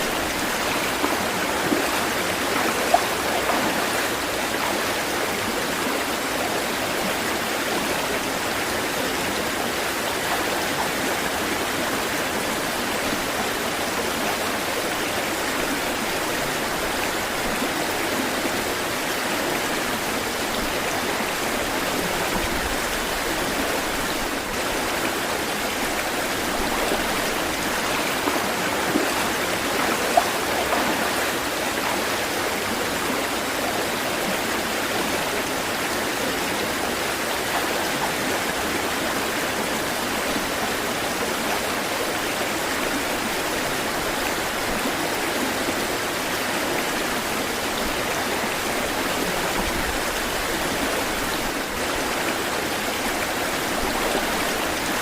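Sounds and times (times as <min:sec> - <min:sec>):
water splashes: 0:00.0 - 0:07.8, 0:14.6 - 0:34.5
flowing water rushing: 0:00.0 - 0:55.0.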